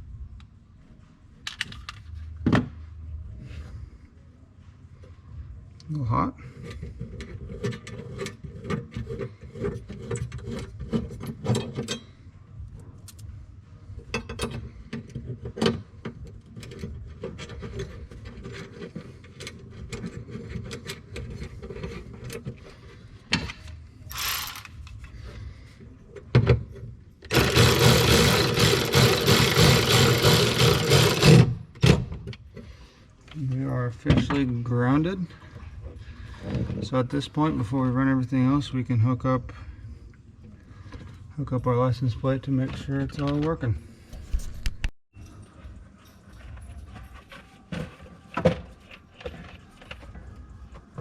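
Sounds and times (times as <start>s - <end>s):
hand tools clicking and rattling: 24.1s - 25.0s, 27.3s - 31.4s.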